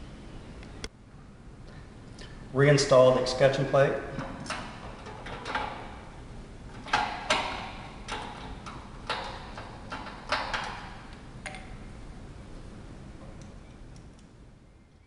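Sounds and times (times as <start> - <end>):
door handle hardware clicking: 6.7 - 11.8.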